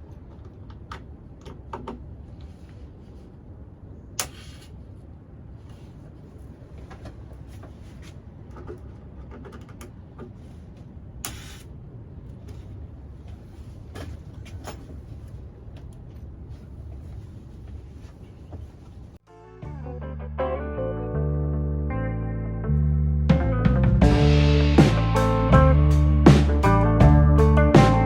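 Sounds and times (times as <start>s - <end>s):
short gas hiss: 4.2s - 4.7s, 11.3s - 11.7s.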